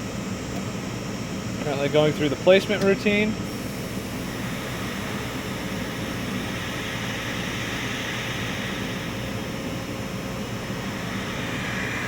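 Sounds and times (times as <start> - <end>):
air and fan noise: 0.0 - 12.0
low hum: 3.3 - 12.0.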